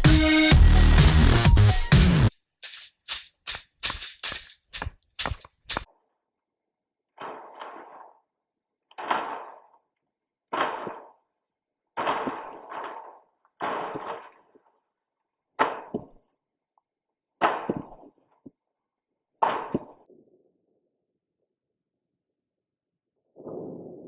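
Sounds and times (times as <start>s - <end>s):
tape tearing off a roll: 2.6s - 5.9s.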